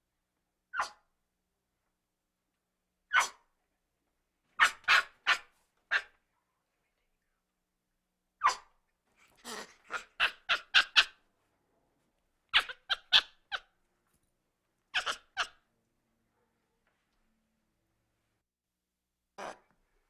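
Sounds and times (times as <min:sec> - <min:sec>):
monkey high calls: 0:09.5 - 0:11.2, 0:12.6 - 0:13.7, 0:15.0 - 0:15.6.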